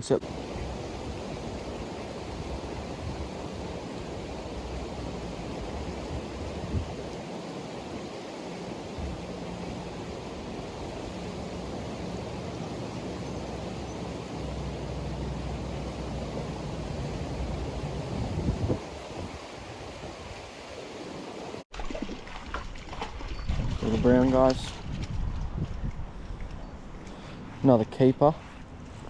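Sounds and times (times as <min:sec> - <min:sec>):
river water rushing: 0:00.2 - 0:21.6.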